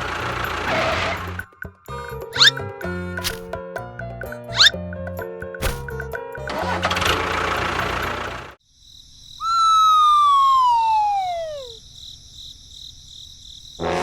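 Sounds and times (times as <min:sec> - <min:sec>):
cartoon falling whistle: 0:02.4 - 0:02.6, 0:04.5 - 0:04.8, 0:09.4 - 0:11.8.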